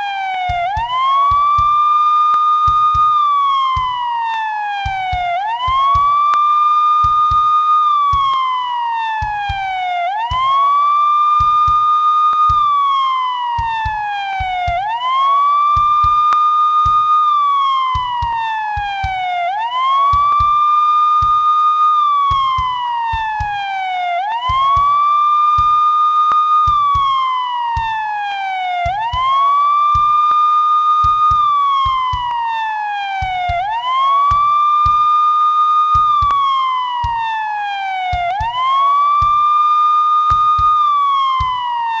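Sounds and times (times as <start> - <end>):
police siren wailing: 0.0 - 42.0.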